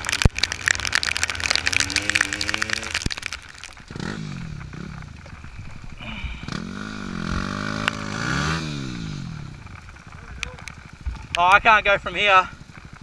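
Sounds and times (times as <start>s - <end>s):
crackling rattling noise: 0.0s - 6.0s, 9.4s - 12.0s
dirt bike engine revving: 3.8s - 10.2s.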